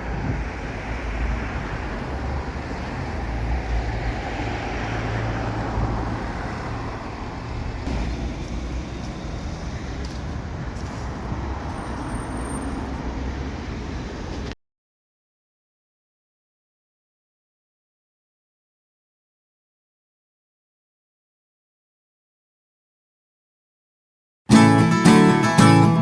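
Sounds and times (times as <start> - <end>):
low traffic rumble: 0.0 - 14.6
passing vehicles: 0.0 - 14.6.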